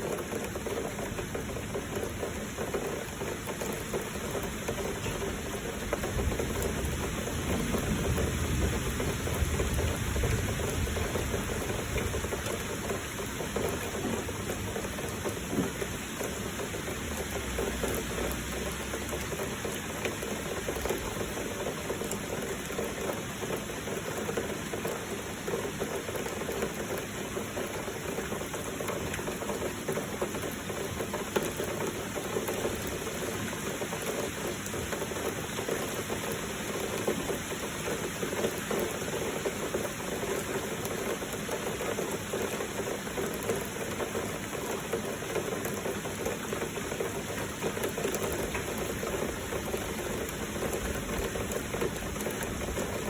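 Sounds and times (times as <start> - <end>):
flowing water: 0.0 - 53.0
heavy rain: 0.0 - 53.0.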